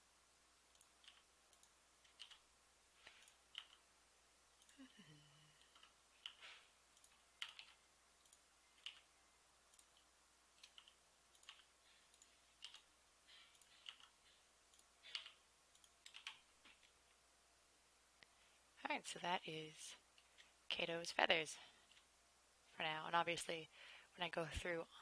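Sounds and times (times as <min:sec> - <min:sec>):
mouse and keyboard clicks: 0:03.0 - 0:03.8, 0:05.6 - 0:09.1, 0:09.7 - 0:12.9, 0:13.5 - 0:17.0.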